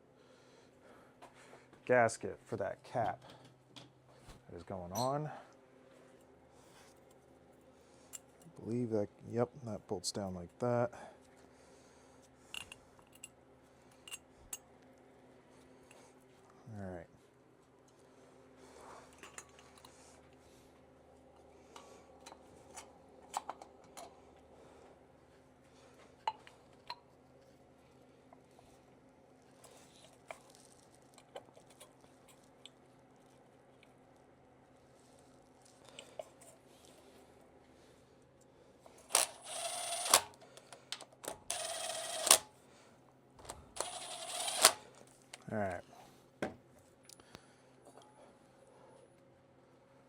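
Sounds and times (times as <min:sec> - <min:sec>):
faint steady hum: 0:00.0 - 0:50.0
metal parts and tools clicking: 0:19.2 - 0:19.9, 0:39.0 - 0:42.4
power tool trigger click: 0:39.1 - 0:40.4, 0:41.4 - 0:42.4, 0:43.8 - 0:44.8.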